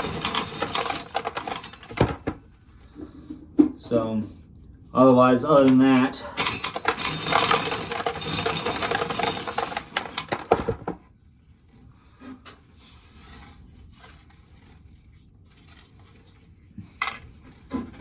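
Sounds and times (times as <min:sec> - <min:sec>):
corn kernels rattling into container: 0:00.0 - 0:02.2, 0:05.5 - 0:11.0.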